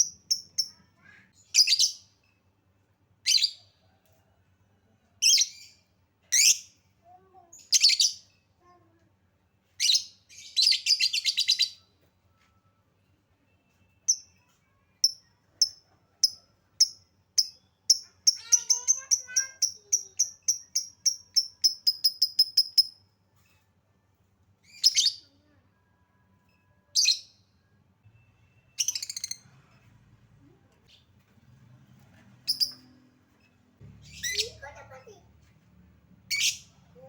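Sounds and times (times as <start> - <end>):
lovebird chirping: 32.4 - 33.0, 34.0 - 34.8.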